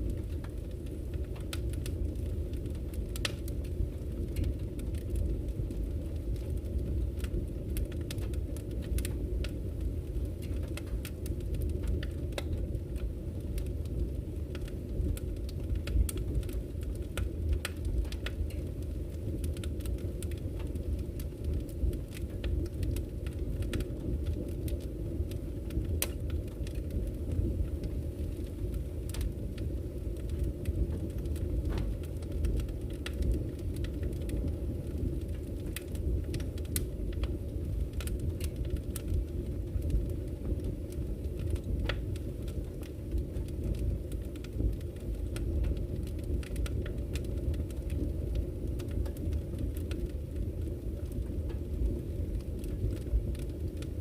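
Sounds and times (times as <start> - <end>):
fire rumbling: 0.0 - 54.0
logs crackling and popping: 0.0 - 54.0.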